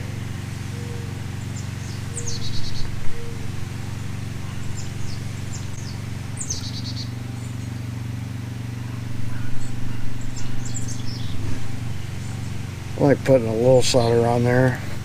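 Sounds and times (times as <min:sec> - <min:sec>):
birds chirping: 0:00.0 - 0:15.0
steady low hum: 0:00.0 - 0:15.0.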